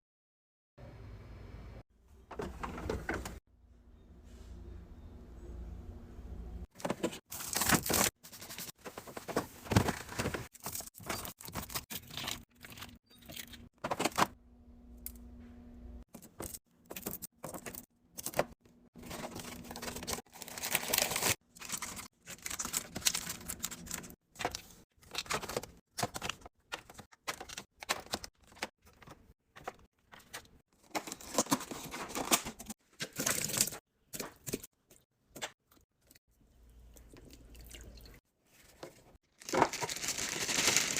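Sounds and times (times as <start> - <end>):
items clicking and clattering: 16.1 - 34.7
snack packaging crinkling: 19.0 - 26.4, 39.3 - 40.9.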